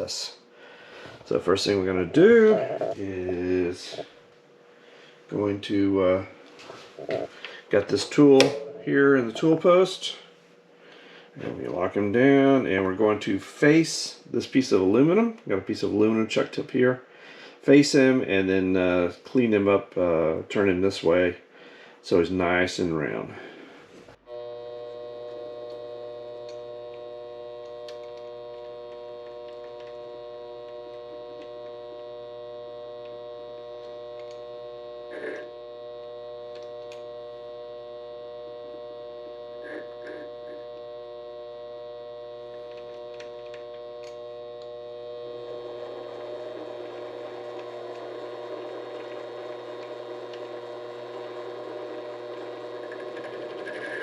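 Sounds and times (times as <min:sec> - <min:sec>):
lathe motor whining: 0:01.0 - 0:04.1, 0:07.0 - 0:10.1, 0:24.3 - 0:54.0.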